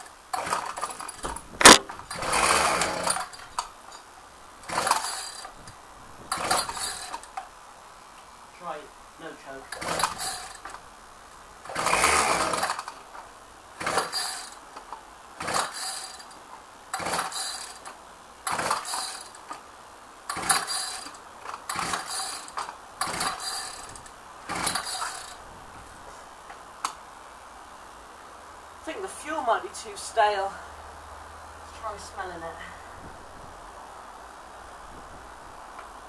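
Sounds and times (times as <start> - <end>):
recoil starter whirring: 0.3 - 3.6, 11.6 - 13.0, 20.3 - 25.4.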